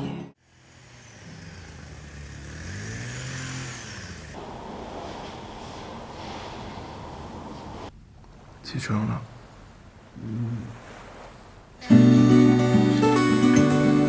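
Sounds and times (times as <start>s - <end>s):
vehicle driving past: 0.4s - 7.9s
steady hiss: 4.4s - 12.4s.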